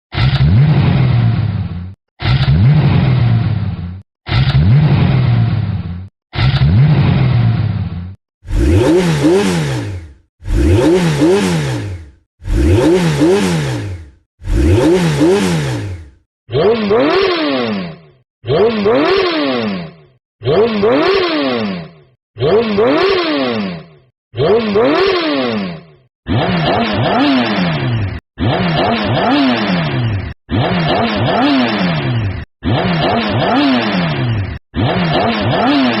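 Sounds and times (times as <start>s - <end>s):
sports car engine revving: 8.5s - 16.2s.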